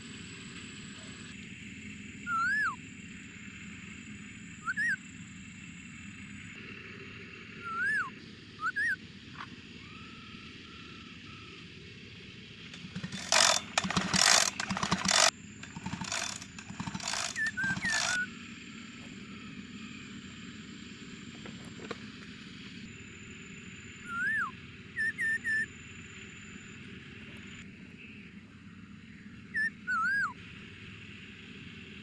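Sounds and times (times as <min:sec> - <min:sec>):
harsh scraping on metal: 0:12.8 - 0:18.2.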